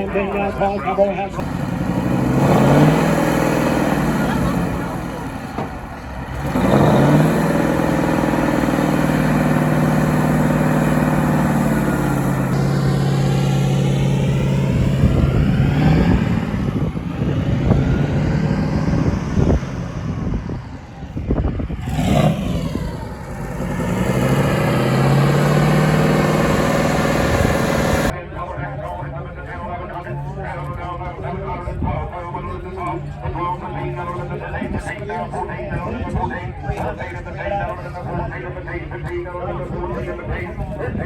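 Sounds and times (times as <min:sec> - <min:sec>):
engine running: 0:01.2 - 0:28.2.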